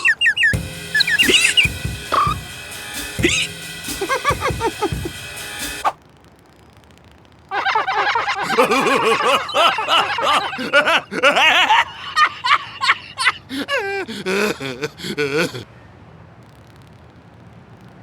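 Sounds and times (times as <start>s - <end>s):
cartoon voices laughing: 1.0s - 2.5s, 3.2s - 5.2s, 7.5s - 15.7s.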